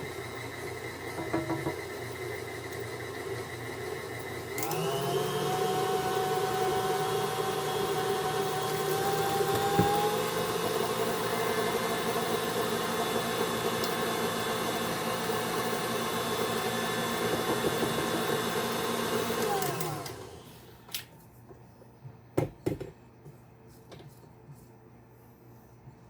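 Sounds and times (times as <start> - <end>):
stand mixer running: 0.0 - 20.6.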